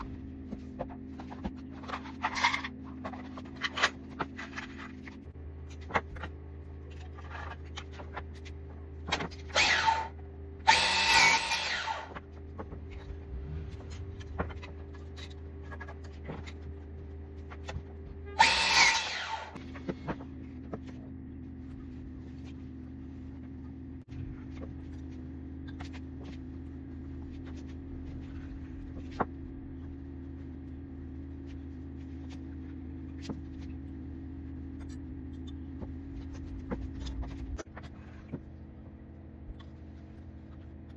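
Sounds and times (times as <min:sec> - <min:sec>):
low steady hum: 0:00.0 - 0:40.9
power tool bursts: 0:09.5 - 0:10.1, 0:10.7 - 0:12.2, 0:18.4 - 0:19.6.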